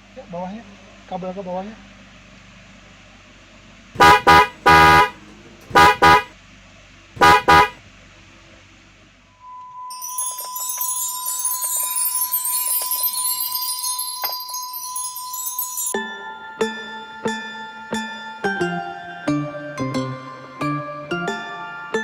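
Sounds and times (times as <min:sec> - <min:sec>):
steady high tone: 0:04.0 - 0:06.3, 0:09.3 - 0:22.0
car horn honking: 0:04.0 - 0:06.4, 0:07.2 - 0:07.8
music with chimes: 0:09.3 - 0:22.0.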